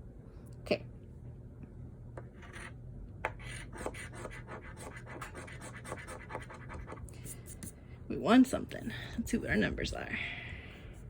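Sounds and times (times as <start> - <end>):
scratching lottery ticket: 3.4 - 7.0.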